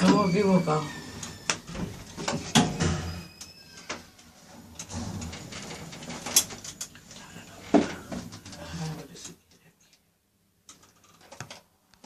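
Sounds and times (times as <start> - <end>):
lift doors sliding: 0.0 - 8.5.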